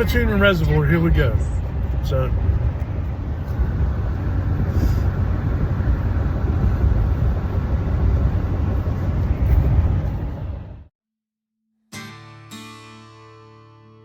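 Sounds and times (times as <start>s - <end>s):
vehicle cab road rumble: 0.0s - 10.9s.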